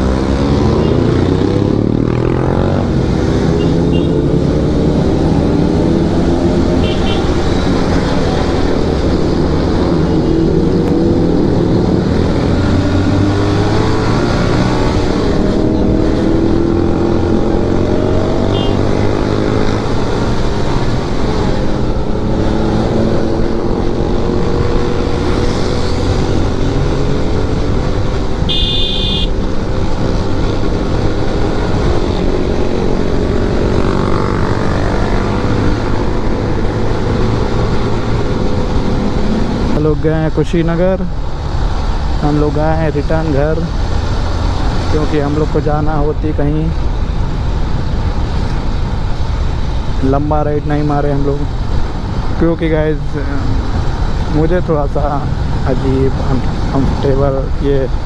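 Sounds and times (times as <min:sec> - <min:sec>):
motorcycle engine revving: 0:00.0 - 0:40.3
wind and road noise: 0:00.0 - 0:58.0
high-pitched beep: 0:28.5 - 0:29.3.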